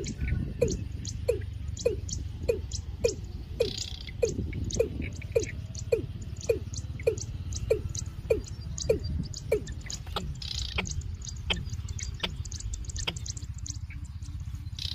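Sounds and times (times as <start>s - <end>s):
bird calling deep hollow notes: 0.0s - 14.9s
faint high chirps: 0.0s - 14.9s
low steady rumble: 0.0s - 14.9s.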